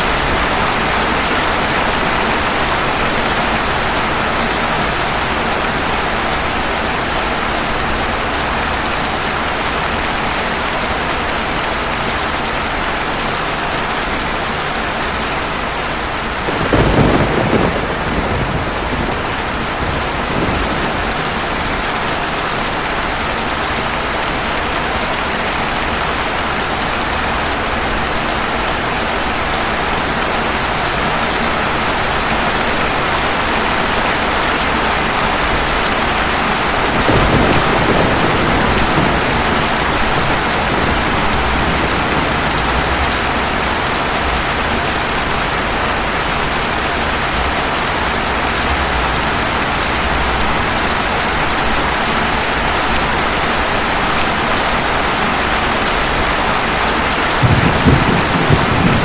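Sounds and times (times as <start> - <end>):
heavy rain: 0.0 - 59.0
faint rumble of thunder: 16.3 - 22.1, 35.4 - 45.4, 56.1 - 59.0
thunderclap: 16.3 - 22.1, 35.4 - 45.5, 57.3 - 59.0.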